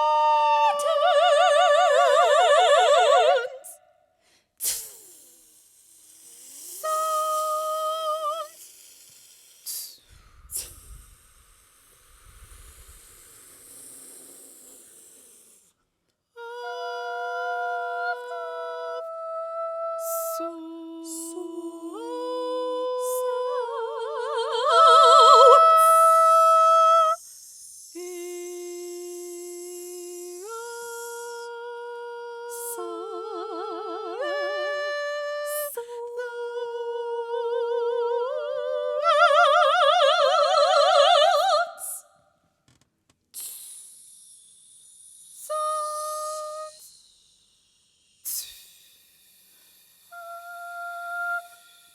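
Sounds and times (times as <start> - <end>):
women singing in harmony: 0.0 - 3.8, 16.4 - 27.2, 30.4 - 42.1
breathy hissing: 3.2 - 15.8, 43.4 - 51.9.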